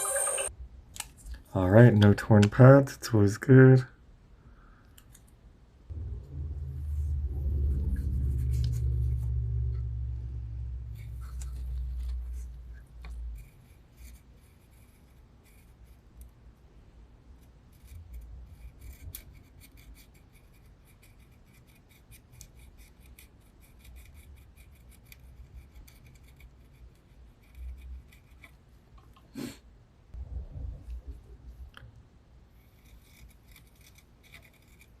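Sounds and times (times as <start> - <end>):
small hand tools scraping and clicking: 32.6 - 35.0.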